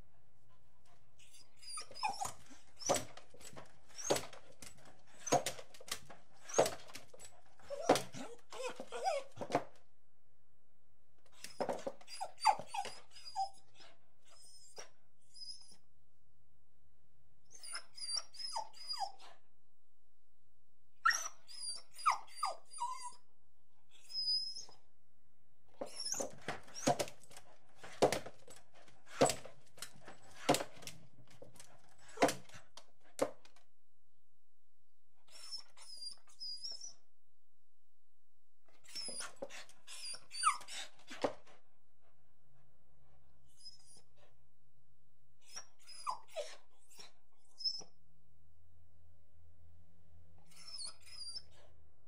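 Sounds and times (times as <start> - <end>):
dog whining and yelping: 1.2 - 5.8, 6.4 - 9.7, 11.3 - 15.9, 17.5 - 19.5, 21.0 - 23.3, 23.9 - 24.9, 25.8 - 27.4, 35.3 - 37.1, 38.7 - 41.3, 43.5 - 44.3, 45.4 - 48.0, 50.4 - 51.8.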